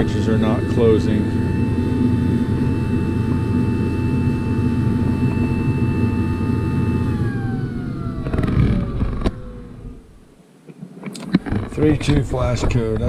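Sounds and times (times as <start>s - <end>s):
furnace motor whining: 0.0s - 10.4s.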